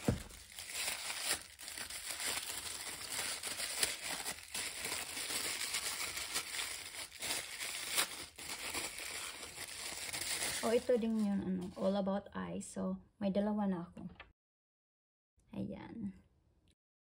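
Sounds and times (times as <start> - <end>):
packaging crinkling: 0.0 - 11.2.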